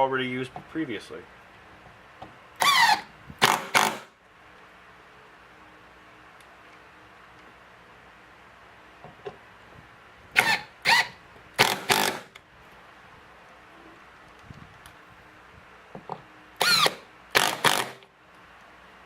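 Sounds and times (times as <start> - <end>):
power driver whirring: 2.6 - 4.1, 10.3 - 12.4, 16.6 - 18.1.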